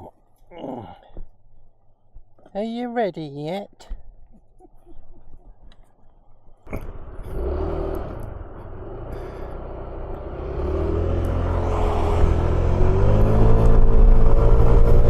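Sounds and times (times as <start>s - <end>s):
scooter engine accelerating: 6.7s - 15.0s.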